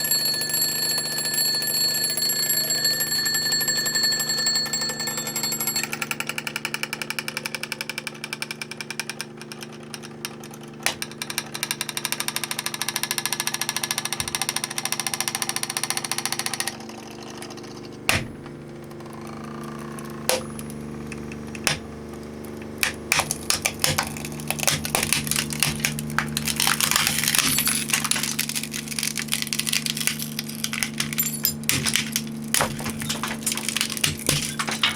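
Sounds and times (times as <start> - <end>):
alarm clock bells ringing: 0.0 - 6.2
plastic case cracking and snapping: 22.5 - 34.9.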